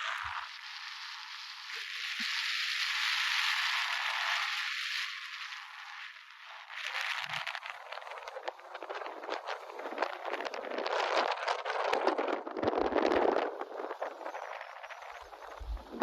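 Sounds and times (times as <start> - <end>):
rapid crackle: 4.5 - 16.0
wind blowing sand: 8.0 - 16.0.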